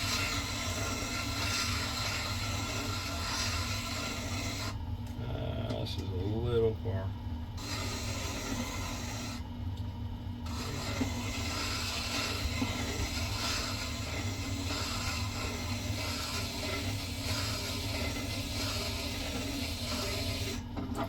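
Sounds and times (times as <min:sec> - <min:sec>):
sharpener motor humming: 0:00.0 - 0:04.8, 0:07.6 - 0:09.5, 0:10.4 - 0:20.7
steel scraping on stone: 0:00.0 - 0:04.8, 0:07.6 - 0:09.4, 0:10.5 - 0:20.6.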